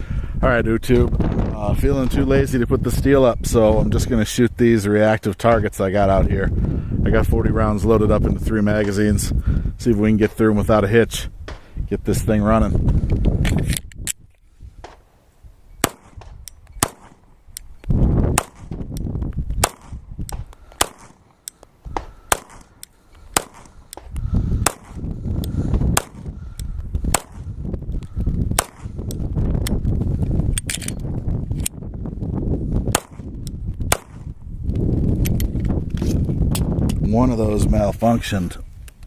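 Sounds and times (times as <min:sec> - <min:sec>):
wind rumbling on microphone: 0:00.0 - 0:39.0
pistol shots: 0:15.8 - 0:17.3, 0:18.3 - 0:18.8, 0:19.6 - 0:21.3, 0:21.9 - 0:25.0, 0:25.9 - 0:26.3, 0:27.1 - 0:27.5, 0:28.6 - 0:29.0, 0:32.9 - 0:33.3, 0:33.9 - 0:34.3.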